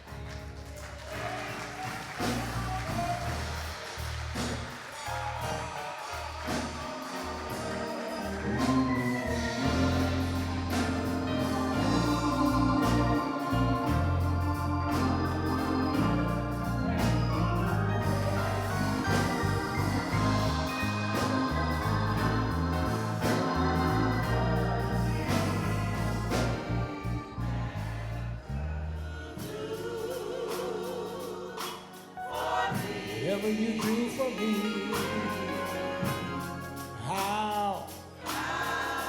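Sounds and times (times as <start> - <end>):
organ chords: 0.0 - 39.0
sharp percussion strokes: 1.5 - 28.2, 29.4 - 39.0
low bass line: 7.6 - 29.2.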